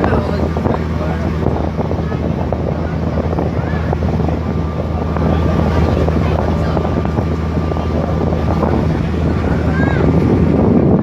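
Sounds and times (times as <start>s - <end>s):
boat engine humming: 0.0s - 11.0s
wind buffeting microphone: 0.0s - 11.0s.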